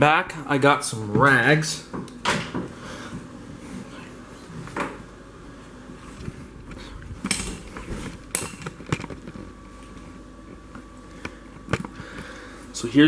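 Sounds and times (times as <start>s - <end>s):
handling knocks and rustles: 6.0s - 12.2s.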